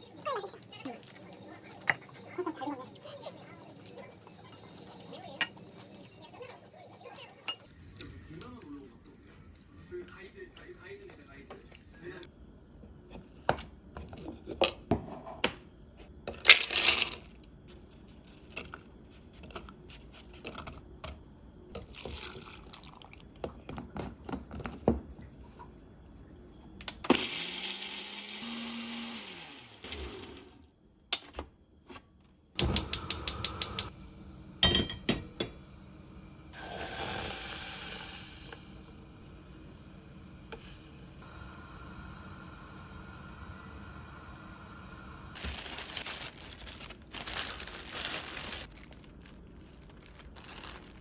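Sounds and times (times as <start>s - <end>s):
blender motor whirring: 27.1s - 30.6s
kitchen clicks and knocks: 34.6s - 35.6s.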